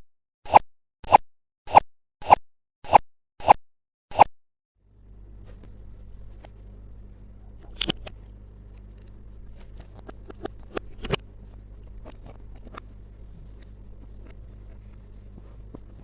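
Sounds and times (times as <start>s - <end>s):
steady low hum: 4.8s - 16.0s.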